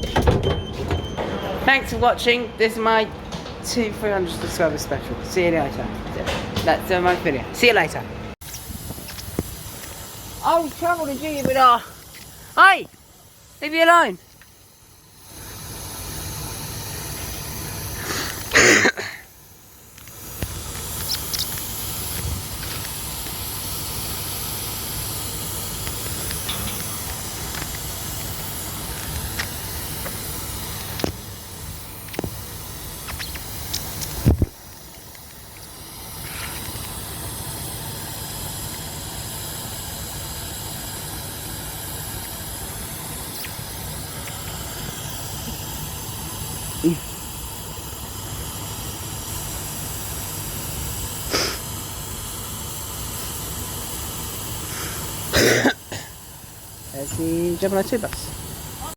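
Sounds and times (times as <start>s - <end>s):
steady hiss: 8.4s - 58.9s.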